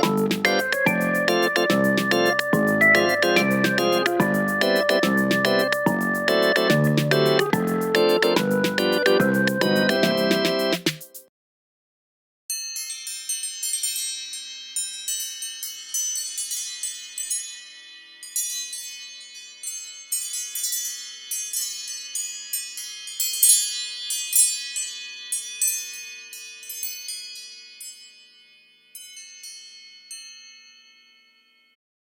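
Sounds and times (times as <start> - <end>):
phone ringtone chime notes: 0.0 - 10.8.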